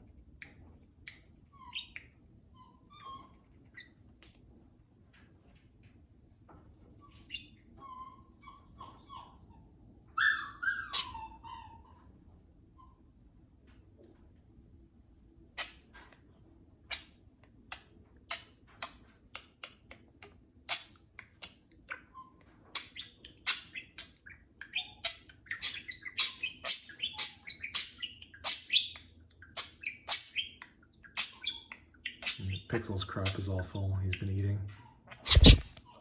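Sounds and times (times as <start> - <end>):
budgerigars chirping: 24.7 - 29.0, 31.2 - 33.4, 35.2 - 35.7.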